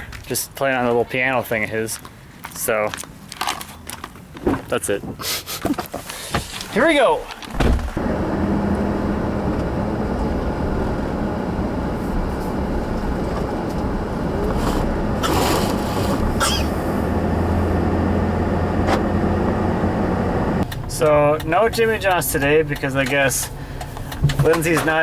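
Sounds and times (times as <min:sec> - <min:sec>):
car engine and road noise: 0:05.6 - 0:25.0
low hum: 0:07.6 - 0:20.7.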